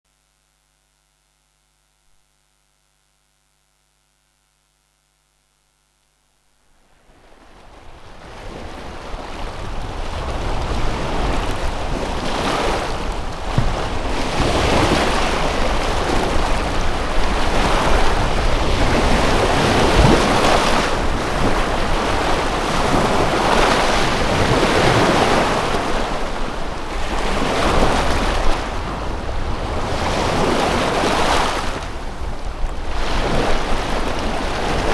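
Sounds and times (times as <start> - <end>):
waves washing on shore: 7.1 - 34.9.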